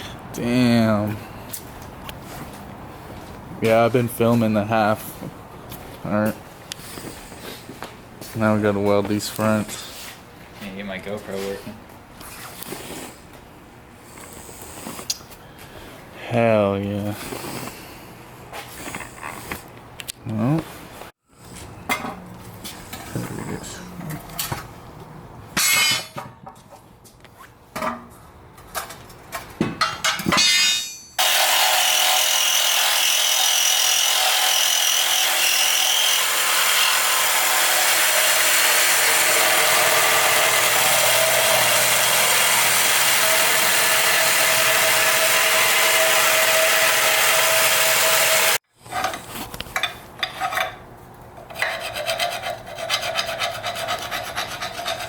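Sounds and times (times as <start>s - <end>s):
metal clinks and knocks: 29.8s - 31.2s.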